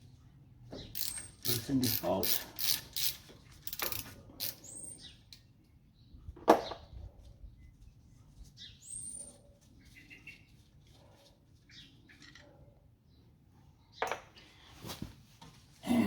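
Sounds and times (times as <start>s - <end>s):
hand ratchet clicks: 0.9s - 4.8s.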